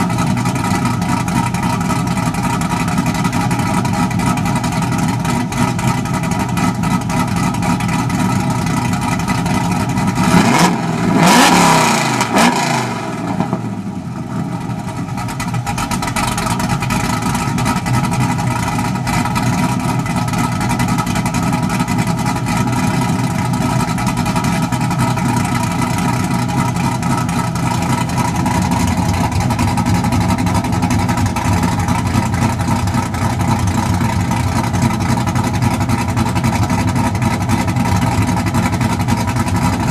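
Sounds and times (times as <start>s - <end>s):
car engine idling: 0.0s - 39.9s
engine revving: 10.0s - 13.8s.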